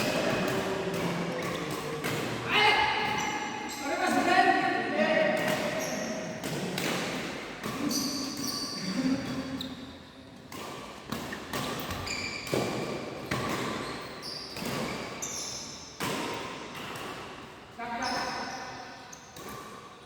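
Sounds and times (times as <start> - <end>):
racket hitting shuttlecock: 0.0 - 3.5, 5.3 - 9.4, 10.4 - 17.5
shoe squeaks: 7.8 - 9.0, 11.8 - 12.6, 13.6 - 15.9, 18.0 - 19.4.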